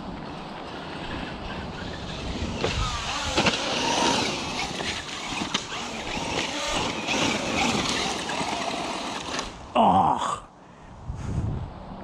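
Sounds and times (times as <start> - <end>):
tyres on dirt: 0.0 - 9.8
electric motor whining: 0.2 - 9.7.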